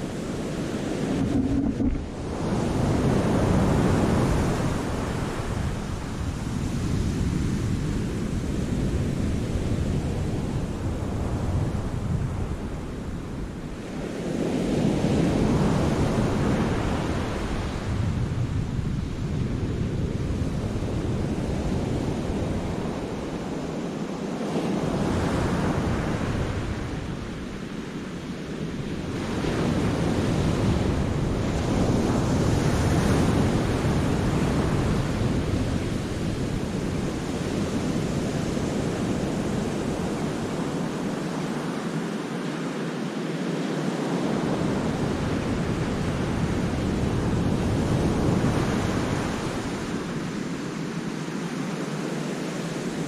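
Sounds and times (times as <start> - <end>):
wind rumbling on microphone: 0.0 - 42.1, 43.5 - 53.0
sea waves breaking on rocks: 0.7 - 2.4.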